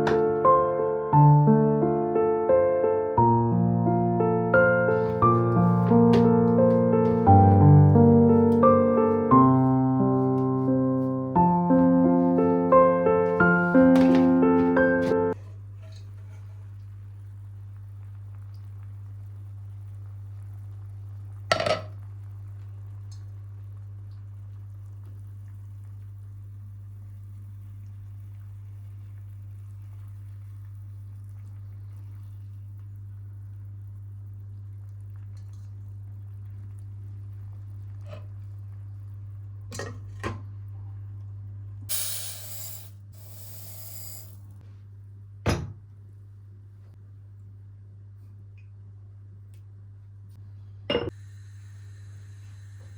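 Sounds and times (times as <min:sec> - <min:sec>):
steady low hum: 0:22.2 - 0:52.9
dishes and cutlery clinking: 0:50.9 - 0:51.2.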